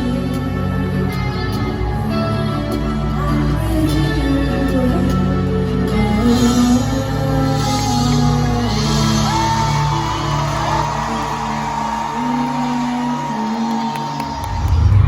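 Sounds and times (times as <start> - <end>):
live concert music: 0.0 - 15.0
crowd shouting and whooping: 8.7 - 15.0.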